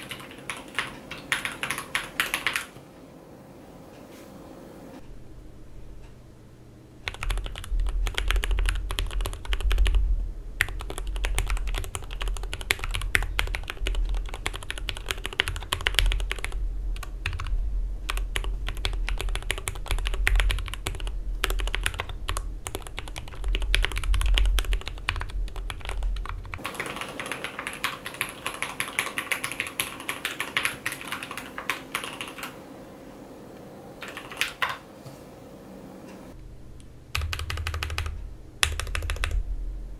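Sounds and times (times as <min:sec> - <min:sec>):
mechanical keyboard typing: 0:00.0 - 0:02.7, 0:07.0 - 0:10.0, 0:10.6 - 0:17.5, 0:18.1 - 0:32.6, 0:34.0 - 0:34.8, 0:37.1 - 0:39.4.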